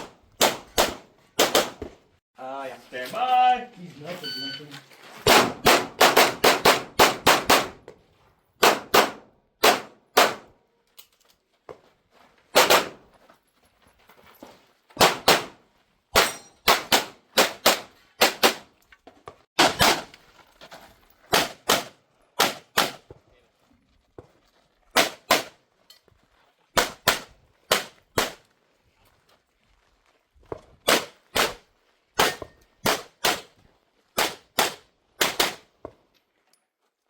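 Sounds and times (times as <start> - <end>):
pistol gunfire: 0.4 - 1.8, 5.3 - 7.8, 8.6 - 10.5, 15.0 - 15.6, 16.2 - 18.6, 21.3 - 23.0, 26.8 - 28.4, 30.9 - 31.6, 32.2 - 33.5, 34.2 - 35.7.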